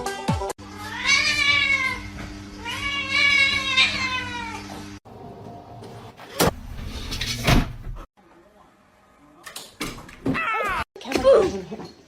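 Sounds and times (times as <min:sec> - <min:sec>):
cat meowing: 0:00.8 - 0:04.7.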